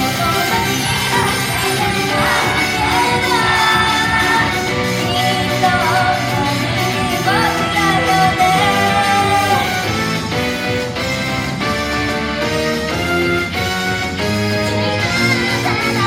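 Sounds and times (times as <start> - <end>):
women singing pop song: 0.0 - 9.9
loud backing track: 0.0 - 16.0.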